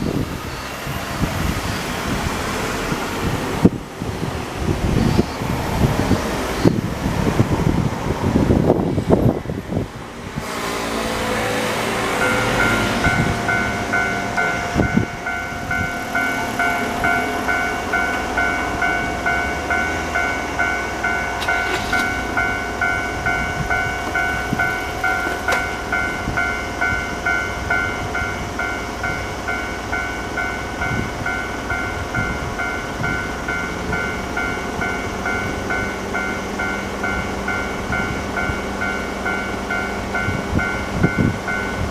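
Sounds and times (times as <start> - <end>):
train passing rumble: 0.0 - 41.9
level crossing warning bell: 10.4 - 41.9.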